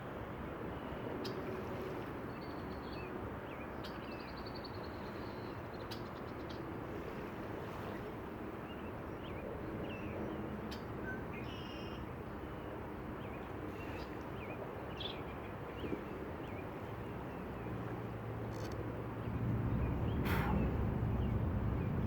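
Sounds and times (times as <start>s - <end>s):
outdoor background noise: 0.0s - 22.0s.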